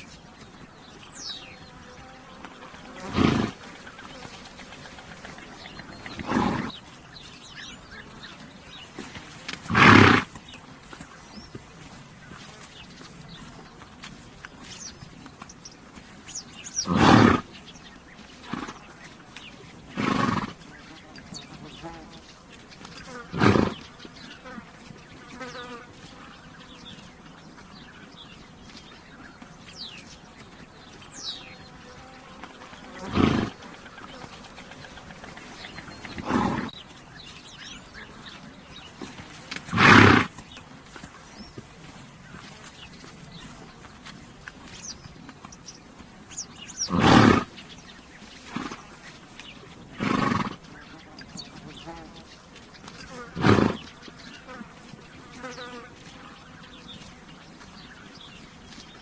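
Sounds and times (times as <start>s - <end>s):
birds chirping: 0.0s - 59.0s
flies buzzing: 0.4s - 14.8s, 16.3s - 27.4s, 29.4s - 59.0s
horse snorting: 2.6s - 10.9s, 16.6s - 17.6s, 18.4s - 19.0s, 19.7s - 22.1s, 23.0s - 24.6s, 32.4s - 36.9s, 38.0s - 41.1s, 46.7s - 47.6s, 48.4s - 51.0s, 52.9s - 54.6s.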